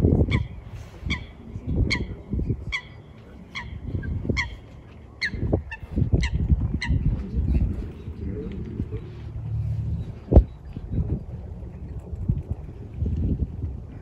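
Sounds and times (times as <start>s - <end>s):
low rumbling noise: 0.0s - 14.0s
waterfowl honking: 2.7s - 4.6s.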